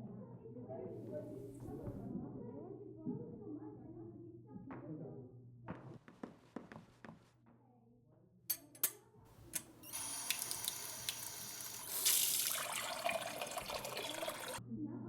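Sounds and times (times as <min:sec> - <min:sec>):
tap water running into sink: 0:09.9 - 0:14.6.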